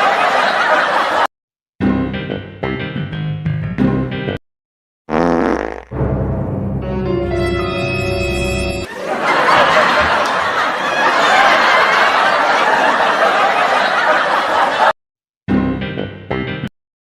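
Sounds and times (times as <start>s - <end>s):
crowd laughing: 0.0s - 1.3s, 8.8s - 15.0s.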